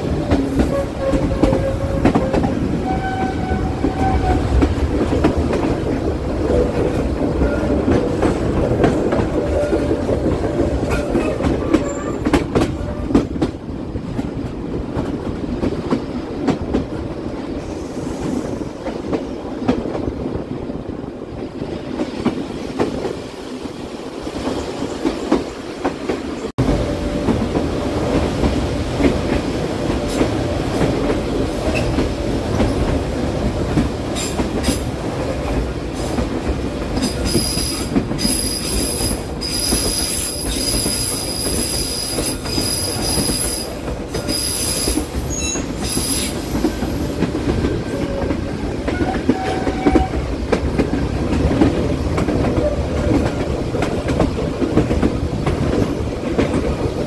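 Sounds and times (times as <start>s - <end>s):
train rumbling on rails: 0.0s - 57.0s
train wheel squeal: 0.5s - 4.5s, 10.9s - 13.2s, 37.0s - 50.3s.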